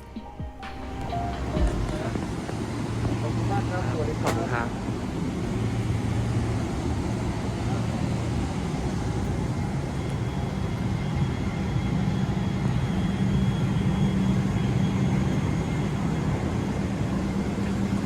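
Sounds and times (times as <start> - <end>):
low hum: 0.0 - 10.6
vehicle drone: 0.0 - 18.0.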